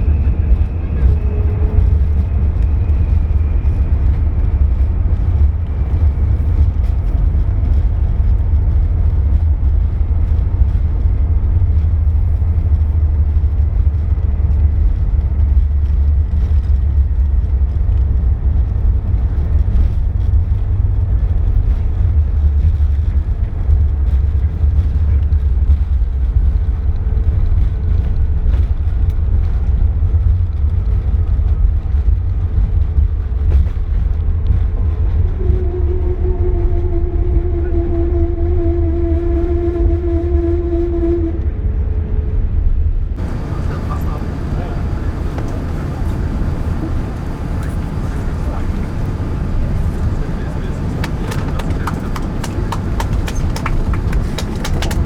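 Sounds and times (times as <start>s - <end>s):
jet engine rumble in cabin: 0.0s - 55.0s
faint high whine: 43.2s - 54.4s.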